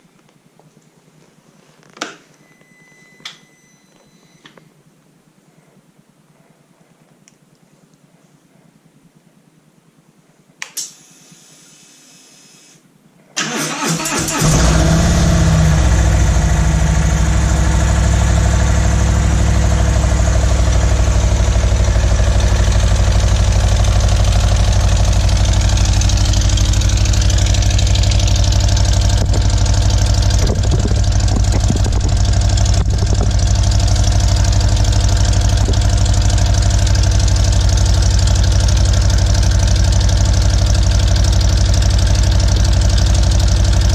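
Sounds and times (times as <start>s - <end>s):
motorcycle engine cranking and idling: 13.4s - 43.9s.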